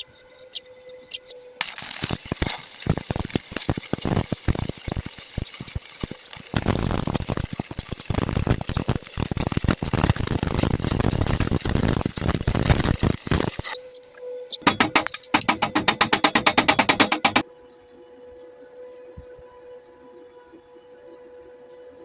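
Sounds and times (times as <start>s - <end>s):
arc welding crackling hiss: 1.4s - 17.4s.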